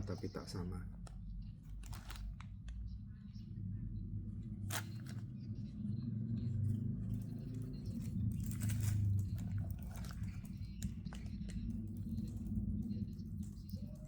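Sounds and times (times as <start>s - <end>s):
steady low hum: 0.0s - 14.0s
packaging rustling and crinkling: 1.6s - 2.5s, 7.2s - 14.0s.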